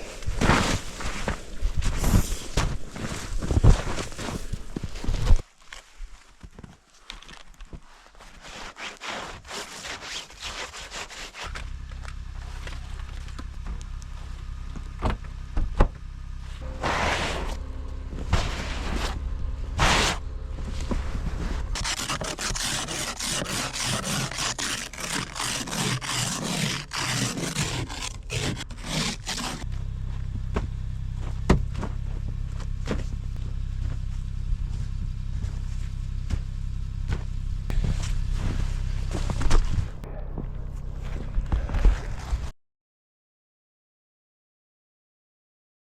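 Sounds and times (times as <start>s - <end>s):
snow scraping and crunching: 0.0s - 7.0s, 7.8s - 11.5s, 16.6s - 30.0s, 37.7s - 40.0s
low steady rumble: 11.5s - 42.5s.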